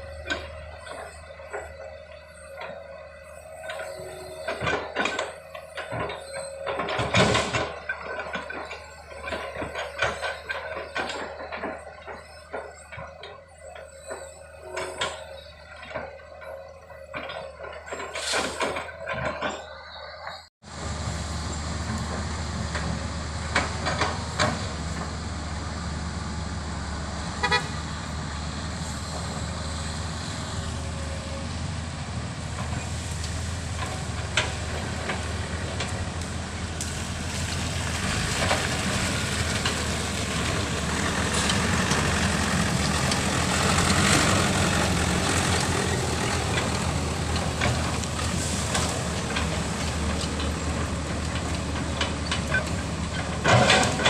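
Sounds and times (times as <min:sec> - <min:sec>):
heavy vehicle engine running: 0:00.0 - 0:54.0.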